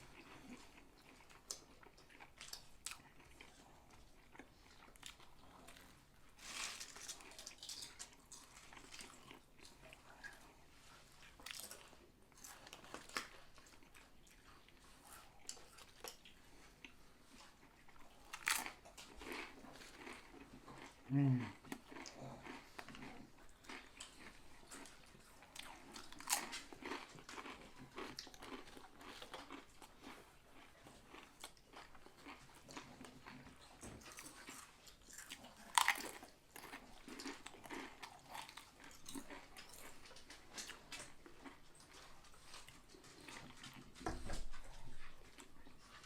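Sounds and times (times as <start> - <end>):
chewing and crunching sandwich: 0.0 - 46.0.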